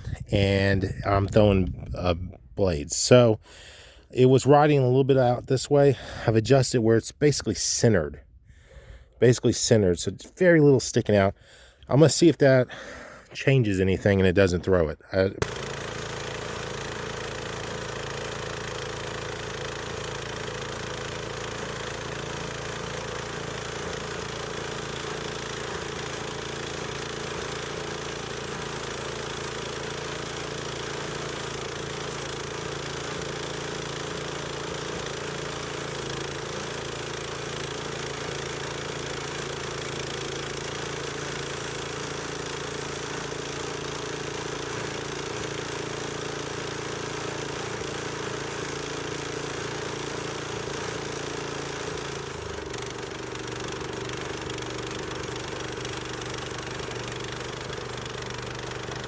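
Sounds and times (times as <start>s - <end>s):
band sawmill engine running: 15.2s - 59.0s.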